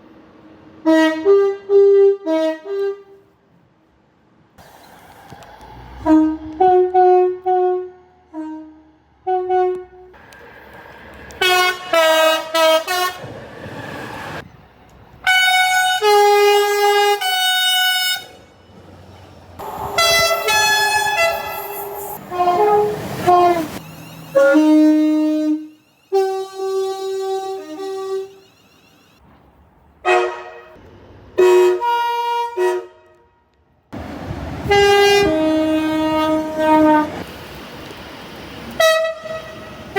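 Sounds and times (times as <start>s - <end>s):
train horn blasts: 0.8s - 3.3s, 6.0s - 10.2s, 11.4s - 13.4s, 15.2s - 18.6s, 19.6s - 28.6s, 30.0s - 30.8s, 31.4s - 33.5s, 34.6s - 37.2s, 38.8s - 39.9s.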